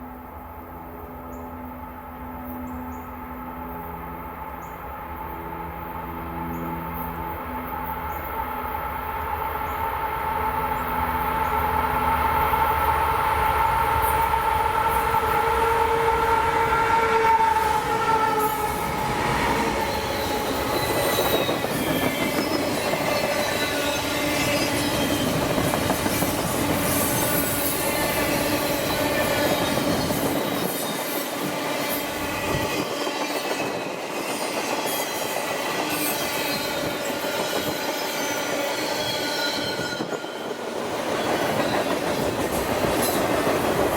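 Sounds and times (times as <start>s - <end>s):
train wheel squeal: 2.3s - 43.9s
locomotive horn: 5.2s - 25.4s.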